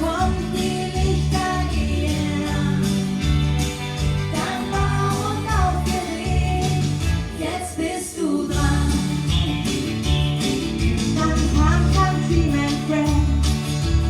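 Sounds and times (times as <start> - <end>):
band playing: 0.0 - 7.3, 8.6 - 14.0
steady bass line: 0.0 - 7.5, 8.5 - 14.0
person singing country song: 0.0 - 14.0.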